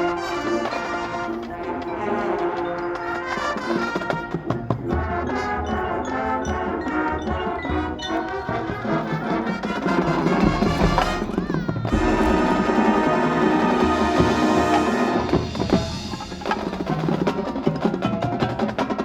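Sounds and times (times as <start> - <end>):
brass holding chords: 5.1 - 16.0
drum and percussion hits: 8.6 - 19.0.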